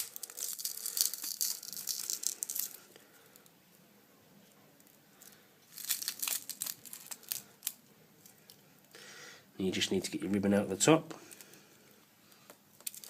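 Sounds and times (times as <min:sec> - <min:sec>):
adhesive tearing: 0:00.0 - 0:02.9, 0:05.7 - 0:07.8
cracked glass crackling: 0:00.0 - 0:02.9, 0:05.2 - 0:08.4, 0:12.8 - 0:13.0.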